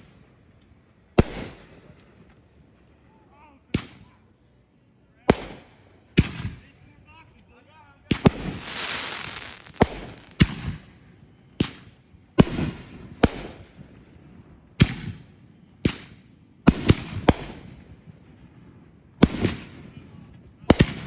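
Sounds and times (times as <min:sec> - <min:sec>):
fireworks bangs with echo: 0:01.2 - 0:02.0, 0:05.2 - 0:06.6, 0:08.1 - 0:11.0, 0:11.6 - 0:13.8, 0:16.7 - 0:18.2, 0:19.2 - 0:19.9, 0:20.7 - 0:21.0
fireworks crackling hiss: 0:08.1 - 0:10.9.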